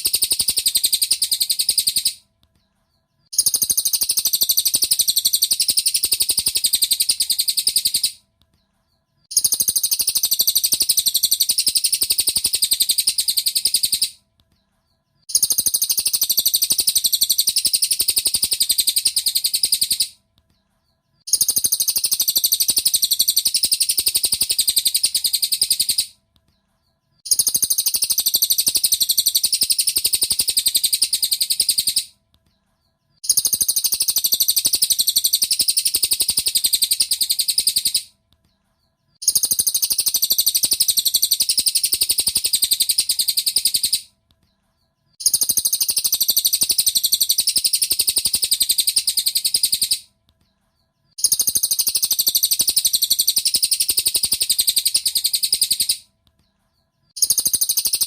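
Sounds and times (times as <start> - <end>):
bird trilling chatter: 0.0 - 2.2, 3.3 - 8.2, 9.3 - 14.2, 15.3 - 20.2, 21.3 - 26.1, 27.3 - 32.1, 33.2 - 38.1, 39.2 - 44.1, 45.2 - 50.1, 51.2 - 56.0.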